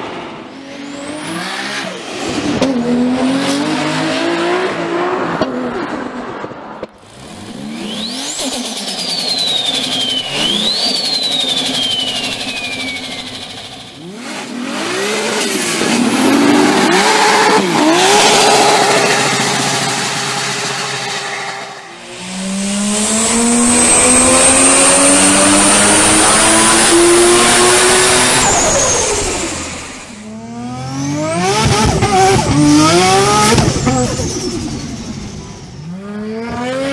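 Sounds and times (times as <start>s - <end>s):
car accelerating hard: 0.0s - 36.9s
car engine revving: 0.1s - 36.9s
turbo whistle: 7.8s - 13.8s.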